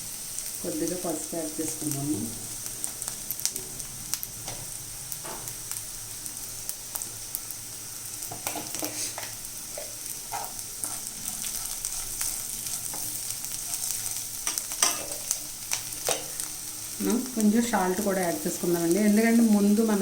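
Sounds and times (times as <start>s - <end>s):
beans sizzling in a pan: 0.0s - 20.0s
spatula scraping a pan: 8.6s - 15.4s.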